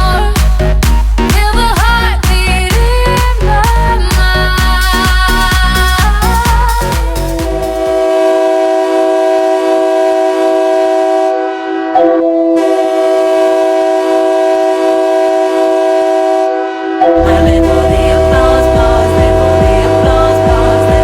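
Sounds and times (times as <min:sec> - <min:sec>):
goal song music: 0:00.0 - 0:08.6, 0:17.2 - 0:21.0
hockey goal horn: 0:07.8 - 0:18.7.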